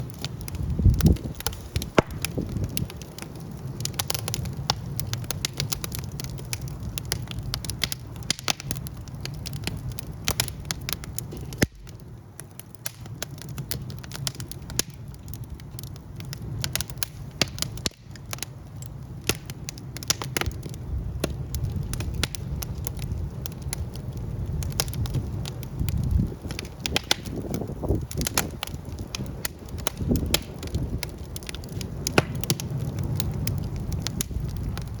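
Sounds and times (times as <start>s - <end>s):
low rumble of flames: 0.0s - 35.0s
wood fire crackling: 0.0s - 35.0s
sharp pops and snaps: 0.1s - 23.9s, 25.8s - 34.9s.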